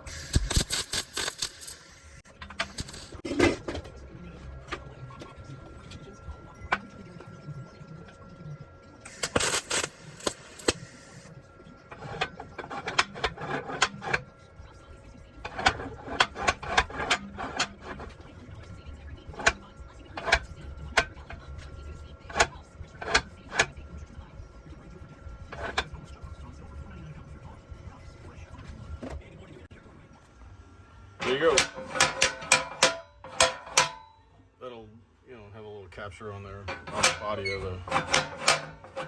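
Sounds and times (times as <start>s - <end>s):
metal clanks and taps: 11.9s - 14.2s, 15.4s - 18.2s, 31.2s - 34.2s, 36.7s - 39.0s.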